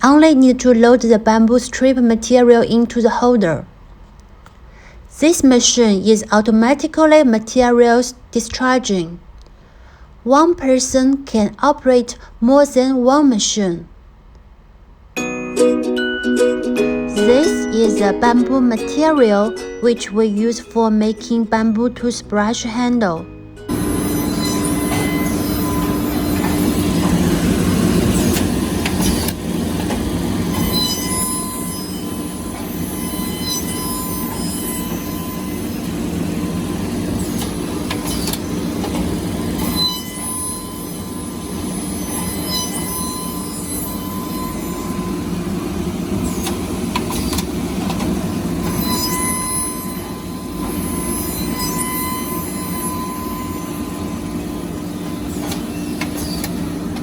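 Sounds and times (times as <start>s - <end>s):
short high machine squeals: 23.7s - 29.3s, 30.5s - 38.6s, 39.5s - 45.5s, 48.6s - 56.8s
milling machine hum with whine: 23.7s - 57.0s.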